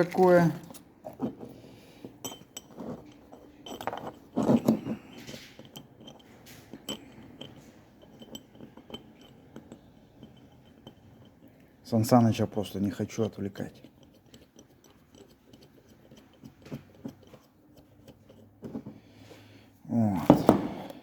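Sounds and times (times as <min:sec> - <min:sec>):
metal parts clinking: 0:02.2 - 0:11.4.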